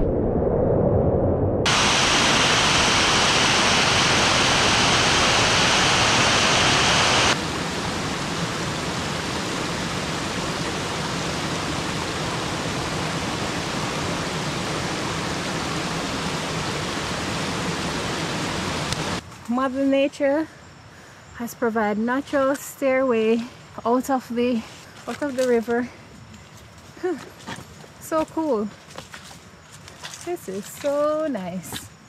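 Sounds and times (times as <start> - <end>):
rush of falling water: 1.7 - 19.2.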